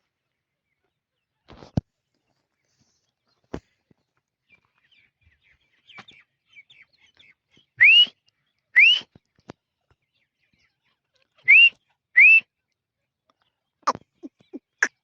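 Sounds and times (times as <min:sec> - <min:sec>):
bird rising whistles: 0:11.5 - 0:12.4.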